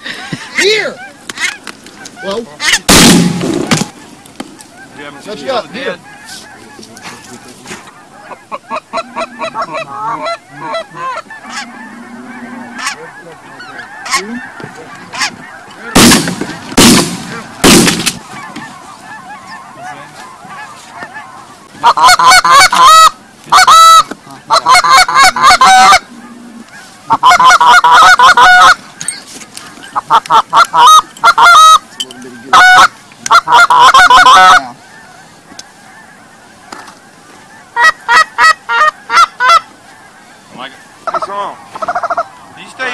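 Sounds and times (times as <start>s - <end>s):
geese honking: 0.0s - 42.9s
shotgun shots: 2.9s - 4.0s, 15.9s - 18.2s.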